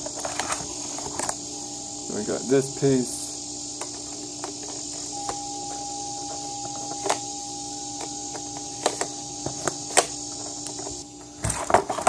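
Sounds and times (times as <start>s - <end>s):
steady background hum: 0.0s - 12.0s
plastic parts clicking and knocking: 8.0s - 12.0s.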